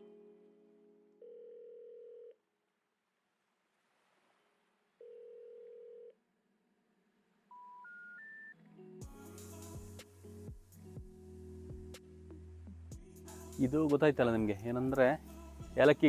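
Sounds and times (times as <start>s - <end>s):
long low telephone beeps: 1.2s - 2.4s, 5.0s - 6.2s.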